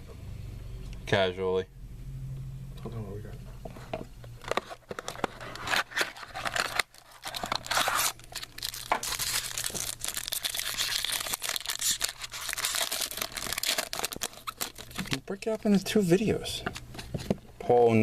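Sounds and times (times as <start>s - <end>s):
wrapper tearing and crinkling: 4.6s - 15.7s.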